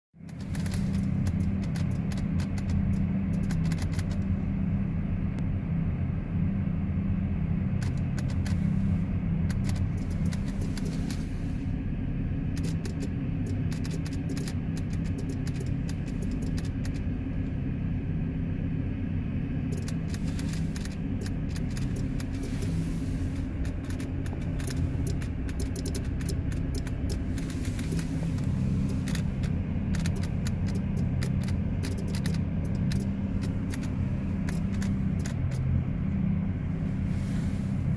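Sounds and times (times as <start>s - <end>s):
steady low hum: 0.1s - 37.9s
rapid electrical clicking: 0.2s - 4.2s, 7.8s - 8.7s, 9.4s - 11.3s, 12.5s - 17.1s, 19.7s - 35.6s.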